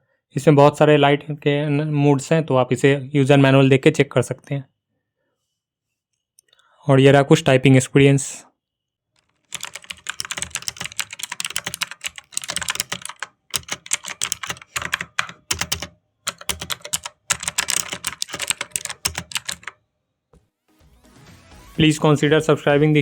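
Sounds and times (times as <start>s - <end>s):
mechanical keyboard typing: 9.2s - 19.8s.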